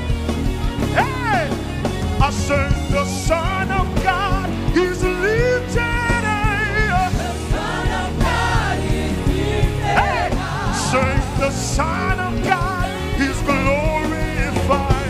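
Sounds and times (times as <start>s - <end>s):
band with drums: 0.0s - 15.0s.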